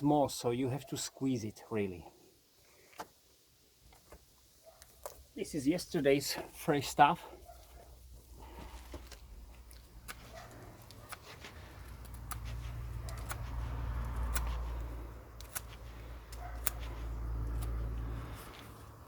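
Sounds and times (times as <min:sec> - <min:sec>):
knife cutting wood clicks: 0:10.8 - 0:18.0.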